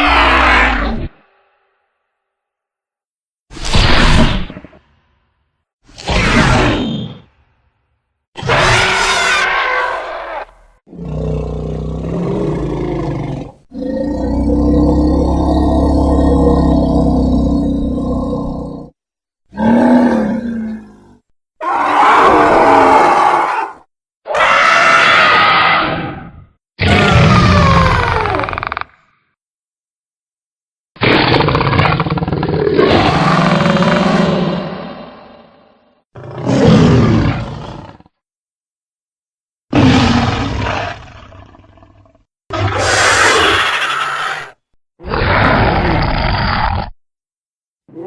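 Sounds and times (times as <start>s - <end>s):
dinosaur roars and grunts: 0.0s - 1.3s, 6.0s - 7.3s, 8.4s - 29.2s, 31.0s - 38.2s, 39.7s - 47.0s.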